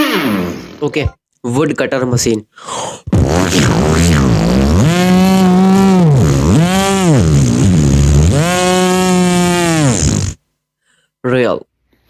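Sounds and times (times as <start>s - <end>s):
beatboxer imitating a saw: 3.1s - 10.4s.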